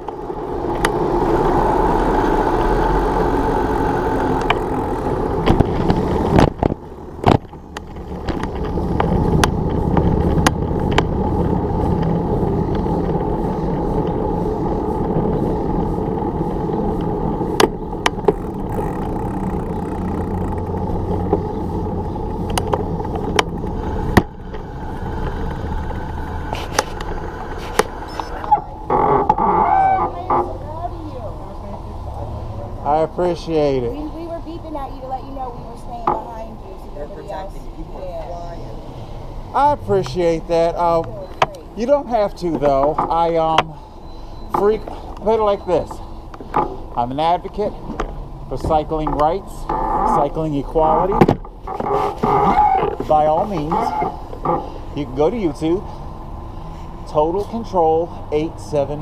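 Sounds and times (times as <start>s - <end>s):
car engine and tyre noise: 0.0s - 59.0s
sharp clicks: 22.2s - 24.3s.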